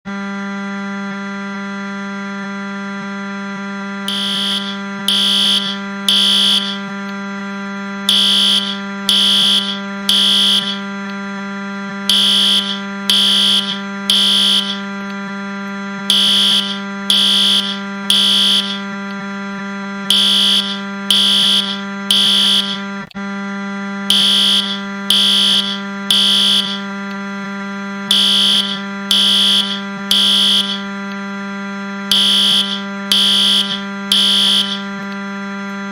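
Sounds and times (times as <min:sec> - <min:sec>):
loud low buzz: 0:00.1 - 0:35.9
fire alarm beeps: 0:04.1 - 0:07.3, 0:08.1 - 0:11.2, 0:11.9 - 0:19.2, 0:20.1 - 0:27.4, 0:28.1 - 0:31.4, 0:32.1 - 0:35.8.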